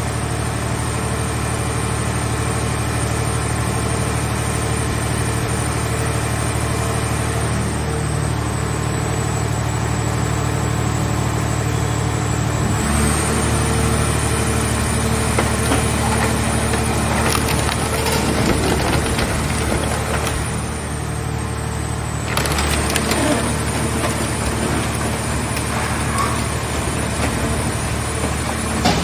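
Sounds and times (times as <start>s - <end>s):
knocks: 26.0s - 29.0s.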